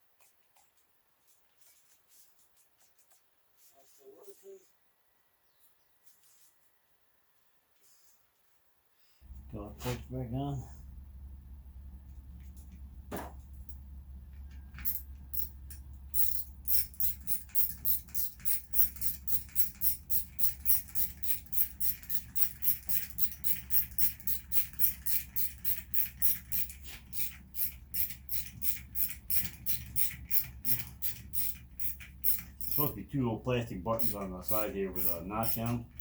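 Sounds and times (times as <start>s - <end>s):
sharp mechanical clicks: 14.8s - 33.0s, 33.9s - 36.0s.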